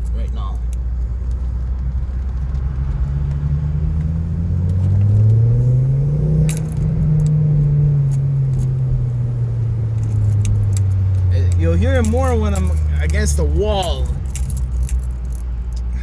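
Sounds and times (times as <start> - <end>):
car engine revving: 0.0 - 16.0
exhaust buzzing rattling drone: 0.0 - 16.0
light metallic jingle: 6.5 - 7.4, 10.0 - 16.0.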